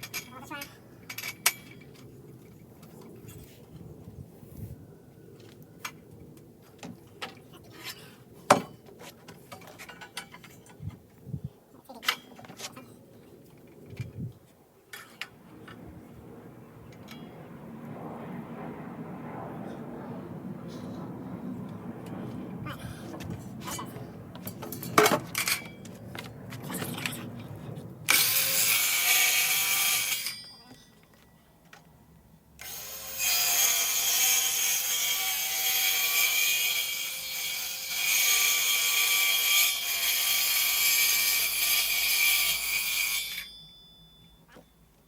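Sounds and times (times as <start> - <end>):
power tool cutting wood: 28.1 - 30.3, 32.6 - 43.4.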